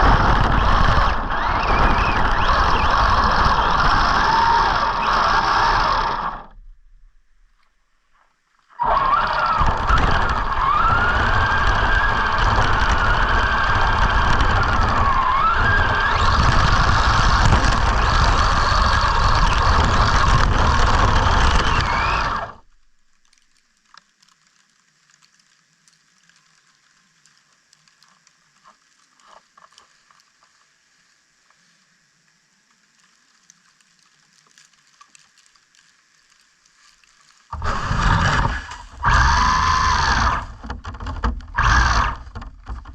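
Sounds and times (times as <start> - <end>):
electric motor whining: 0.0 - 6.6, 8.8 - 22.6, 37.5 - 42.9
rushing snow noise: 8.8 - 22.5, 37.5 - 40.6
faint ticks: 22.5 - 37.6.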